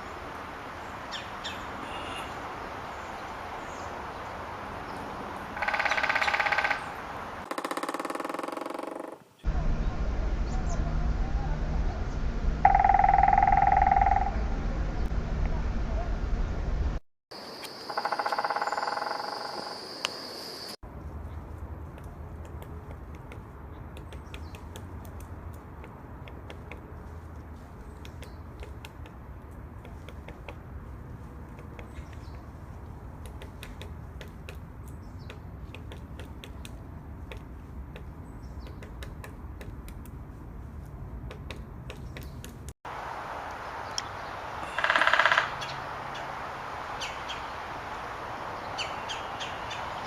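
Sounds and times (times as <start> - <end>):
high falling bird calls: 0.0 - 11.0, 12.0 - 15.1, 43.7 - 50.0
woodpecker drumming on wood: 5.6 - 9.4, 12.6 - 14.4, 17.9 - 19.8, 21.8 - 27.2, 27.8 - 40.2, 41.1 - 42.6, 44.6 - 45.7
high insect buzz: 17.4 - 20.8.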